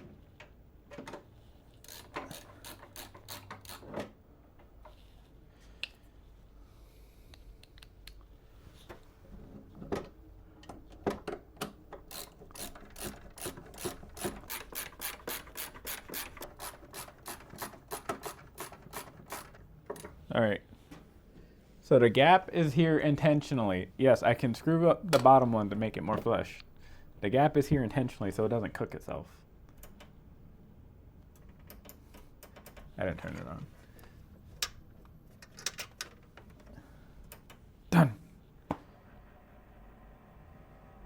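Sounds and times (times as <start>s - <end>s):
screwdriver clicking: 12.1s - 19.5s.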